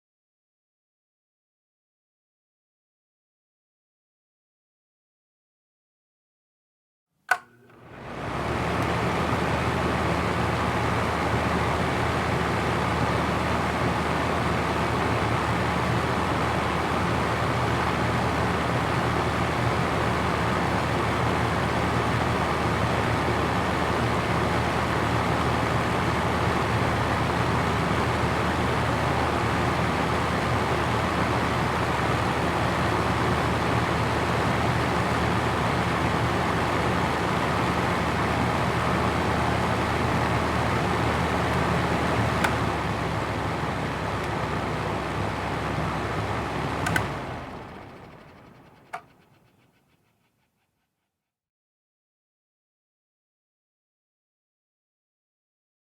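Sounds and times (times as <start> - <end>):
switch click: 7.3 - 7.8, 46.8 - 47.2
room fan air rush: 7.3 - 48.6
low motor hum: 7.3 - 49.5.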